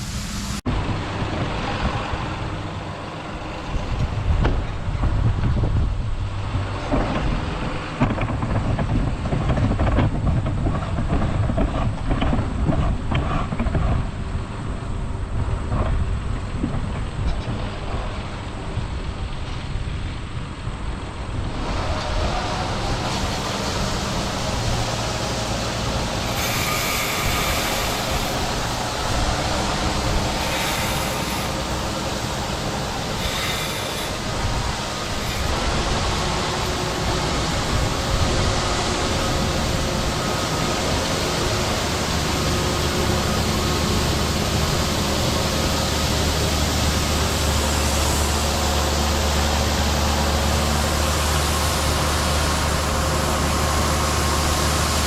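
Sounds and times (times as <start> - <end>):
steady rushing hiss: 0.0 - 0.6, 20.4 - 55.0
harvest machinery rumbling and rattling: 0.0 - 55.0.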